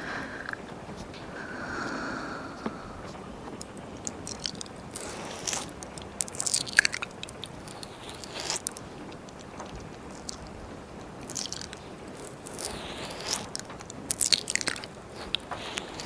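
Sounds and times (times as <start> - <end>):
crackly mouth clicks: 2.5 - 16.0
lip smacks: 3.5 - 16.0
wet tongue licks: 3.6 - 16.0.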